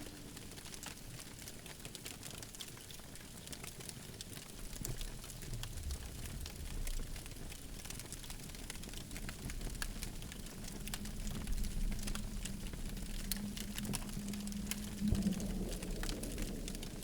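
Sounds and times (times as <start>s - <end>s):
campfire crackling and popping: 0.0s - 17.0s
low rumble of burning wood: 0.0s - 17.0s.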